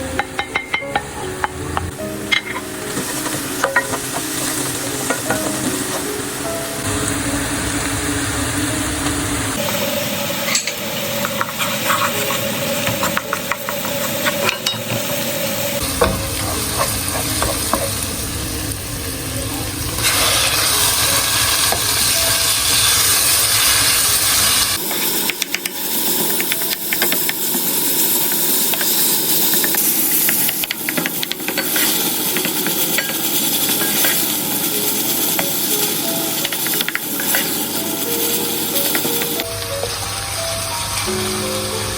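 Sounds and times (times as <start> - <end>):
food sizzling in a pan: 0.0 - 41.9
spoon scraping and clinking: 2.3 - 5.5, 10.5 - 15.0, 28.7 - 39.5.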